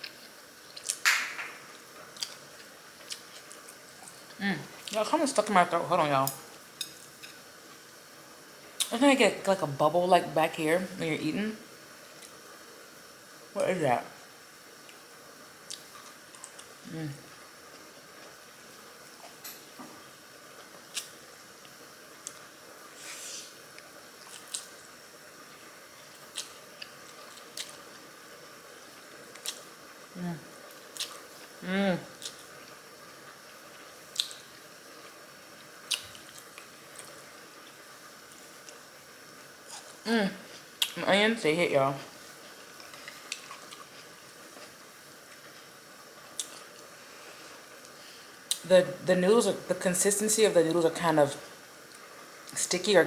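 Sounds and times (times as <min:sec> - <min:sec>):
faint steady hiss: 0:00.0 - 0:53.0
wet chewing of noodles: 0:23.7 - 0:24.9, 0:42.2 - 0:48.6.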